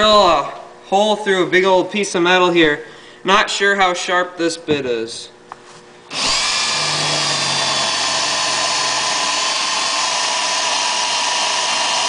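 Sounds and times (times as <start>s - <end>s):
cordless drill boring through metal: 6.1s - 12.0s.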